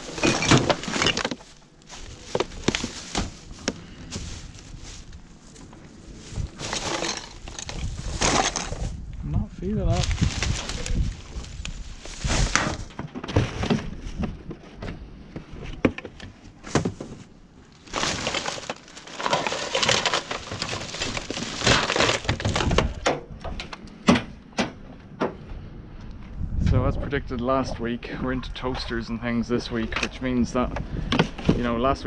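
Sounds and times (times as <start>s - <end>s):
hard items clinking and knocking: 0.0s - 9.0s, 17.8s - 23.0s
bags and packaging rustling: 0.0s - 9.1s, 9.8s - 14.2s, 16.6s - 23.0s.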